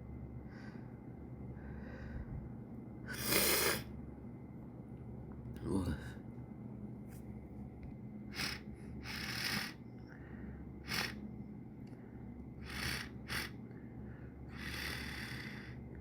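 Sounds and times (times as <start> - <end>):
person sniffling: 3.1 - 3.9.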